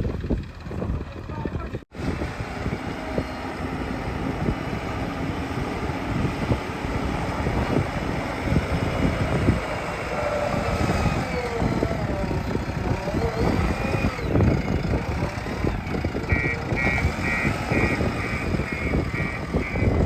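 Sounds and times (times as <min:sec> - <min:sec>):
diesel engine rumbling: 0:00.0 - 0:20.0
reversing alarm beeping: 0:16.2 - 0:20.0.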